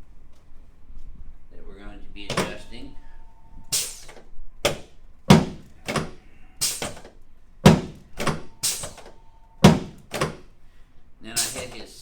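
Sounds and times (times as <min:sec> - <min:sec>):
table section clunking down: 0:02.3 - 0:02.8, 0:03.8 - 0:10.5.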